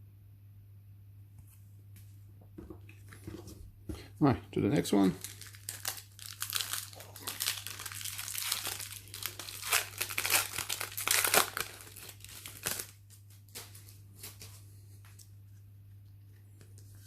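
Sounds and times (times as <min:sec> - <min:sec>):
foil wrapper crinkling and tearing: 0:04.9 - 0:14.4.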